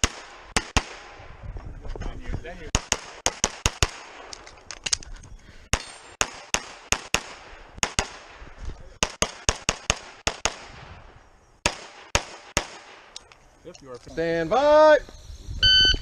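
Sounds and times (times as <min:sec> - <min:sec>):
pistol shots with echo: 0:00.0 - 0:01.2, 0:02.7 - 0:04.4, 0:05.7 - 0:08.4, 0:09.0 - 0:10.8, 0:11.6 - 0:13.1.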